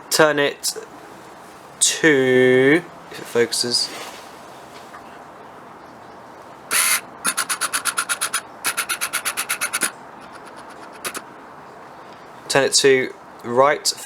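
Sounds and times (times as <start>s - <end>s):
socket ratchet clicking: 6.7s - 11.2s.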